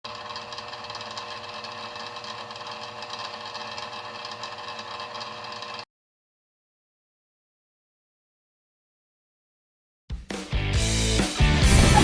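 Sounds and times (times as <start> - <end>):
small electric motor humming: 0.0 - 5.9.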